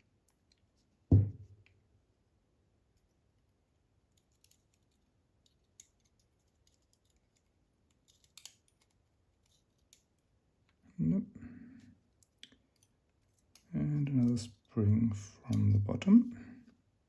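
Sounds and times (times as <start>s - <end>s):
dull knock: 1.1s - 1.5s
small metal parts clicking and scraping: 4.1s - 10.2s, 12.2s - 14.7s.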